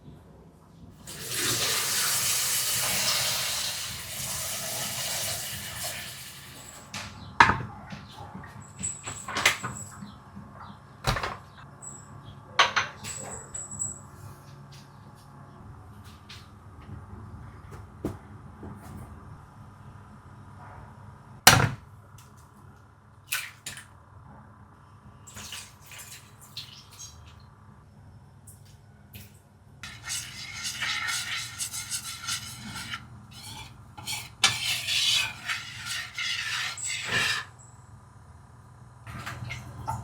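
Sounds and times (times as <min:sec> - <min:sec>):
utensil scraping against bowl: 0:29.8 - 0:37.6.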